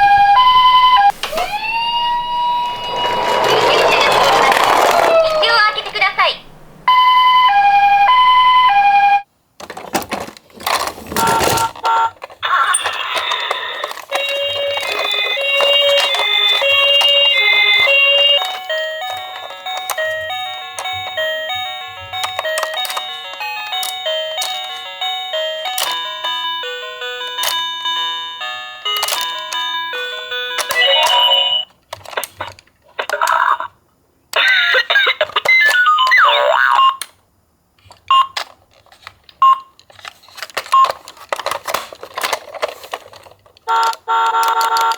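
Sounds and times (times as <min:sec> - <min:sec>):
two-tone ambulance siren: 0:00.0 - 0:09.2, 0:14.1 - 0:31.7
electronic sounds with falling glides: 0:01.1 - 0:05.9.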